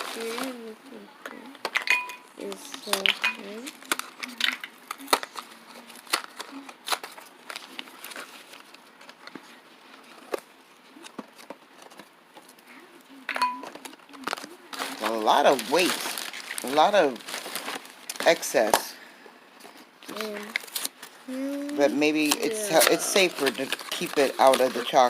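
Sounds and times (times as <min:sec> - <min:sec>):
plastic packaging crinkling: 0:00.0 - 0:00.7, 0:02.4 - 0:12.5, 0:13.6 - 0:18.9, 0:20.0 - 0:21.2, 0:22.2 - 0:25.0.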